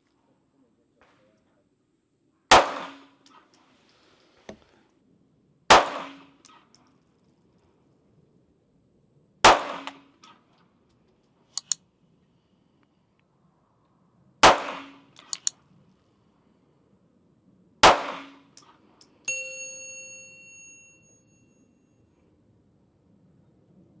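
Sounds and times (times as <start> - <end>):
pistol shots with ringing echo: 2.5 - 3.4, 5.7 - 6.6, 9.4 - 10.3, 14.4 - 15.2, 17.8 - 18.7
light sharp ticks: 11.2 - 11.8, 15.1 - 15.6
small click: 11.5 - 11.8, 15.2 - 15.6.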